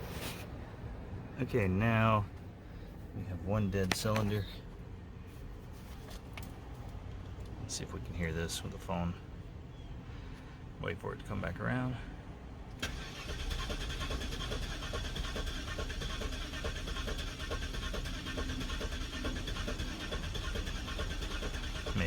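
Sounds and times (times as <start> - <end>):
engine cranking on starter: 12.8 - 22.0.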